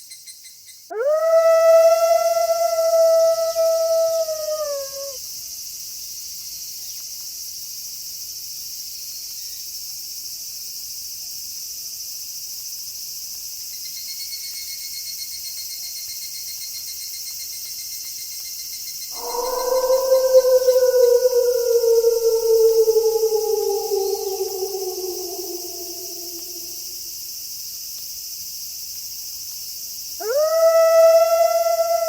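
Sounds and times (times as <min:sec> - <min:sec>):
crickets chirping: 0:00.9 - 0:05.2, 0:19.1 - 0:27.2, 0:30.0 - 0:32.0
wolf howling: 0:00.9 - 0:05.2, 0:19.1 - 0:27.0, 0:30.2 - 0:32.0.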